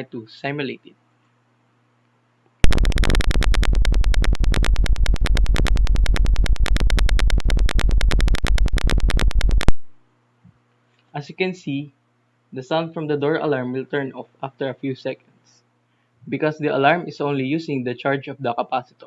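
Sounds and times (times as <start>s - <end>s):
piezo alarm pulsing buzz: 2.6s - 10.0s.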